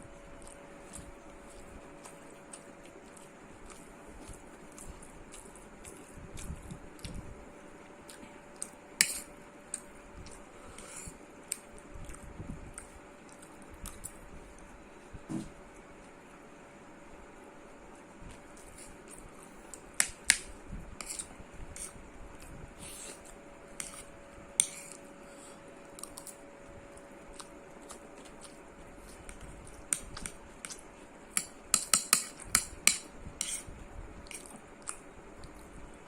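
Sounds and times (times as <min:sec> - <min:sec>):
faint steady hum: 0:00.0 - 0:36.0
chewing food: 0:00.3 - 0:07.3, 0:11.5 - 0:14.7, 0:25.8 - 0:32.6, 0:34.2 - 0:35.7.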